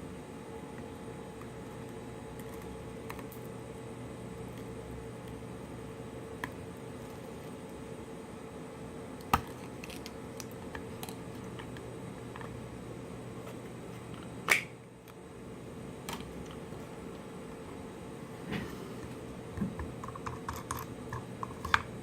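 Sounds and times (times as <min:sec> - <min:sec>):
faint steady hum: 0:00.0 - 0:22.0.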